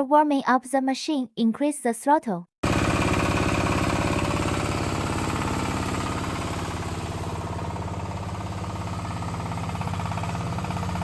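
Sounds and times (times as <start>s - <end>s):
diesel engine running: 2.6s - 11.0s.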